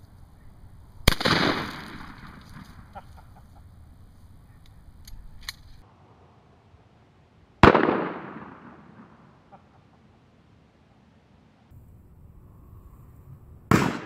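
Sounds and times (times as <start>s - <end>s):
shotgun blast: 1.0s - 2.9s, 7.6s - 9.4s, 13.7s - 14.0s.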